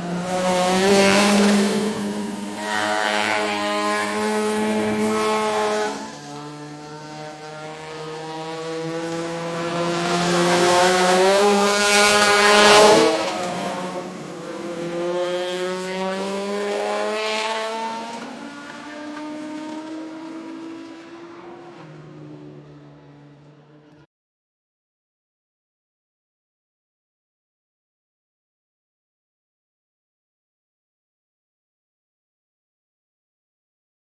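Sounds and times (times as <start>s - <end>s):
race car engine accelerating: 0.0s - 24.0s.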